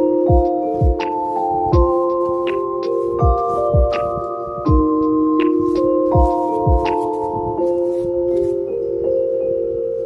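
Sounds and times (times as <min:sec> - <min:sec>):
lo-fi beat with soft chords: 0:00.0 - 0:10.0.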